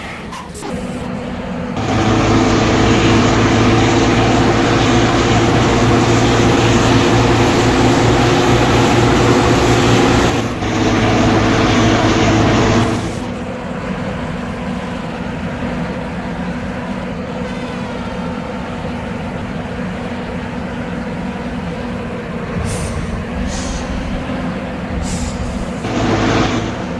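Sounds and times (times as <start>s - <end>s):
bus diesel engine running: 0.0s - 26.9s.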